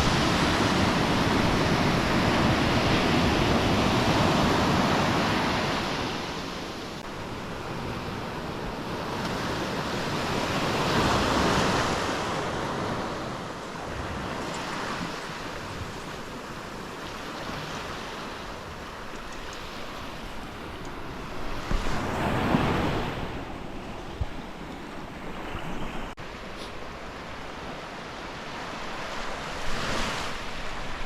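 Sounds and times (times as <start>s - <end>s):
ocean surf breaking on beach: 0.0s - 31.0s.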